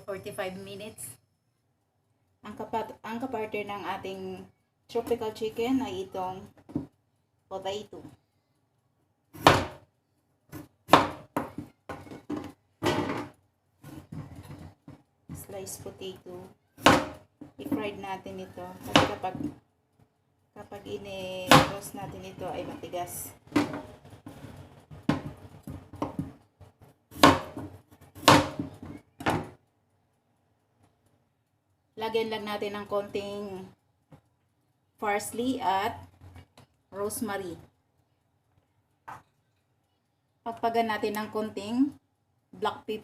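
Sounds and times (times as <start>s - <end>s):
knocks and thuds of kitchen handling: 6.6s - 6.9s, 10.5s - 15.5s, 16.8s - 17.9s, 18.8s - 19.6s, 21.5s - 22.2s, 23.4s - 26.4s, 27.1s - 29.6s.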